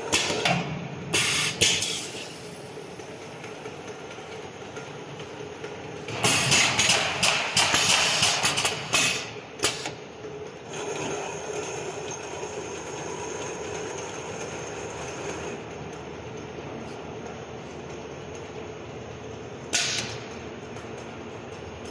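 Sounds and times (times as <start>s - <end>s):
machine running noise: 0.0s - 21.9s
machine bursts and clatter: 6.0s - 15.6s
sharp click: 19.8s - 20.3s.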